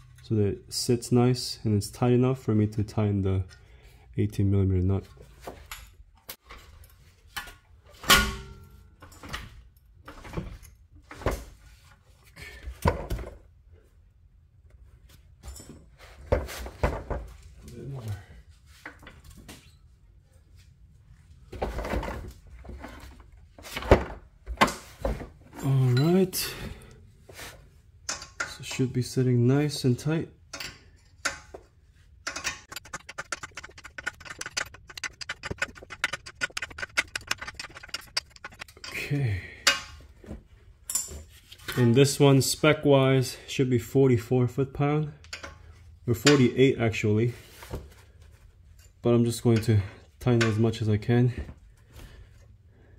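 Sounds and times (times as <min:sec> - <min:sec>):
hand ratchet clicking: 0:32.3 - 0:39.0.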